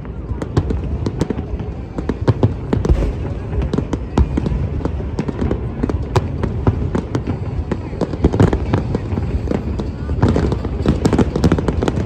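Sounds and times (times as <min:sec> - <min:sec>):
fireworks bangs and crackles: 0:00.0 - 0:12.0
low rumble of bursting shells: 0:02.8 - 0:05.2.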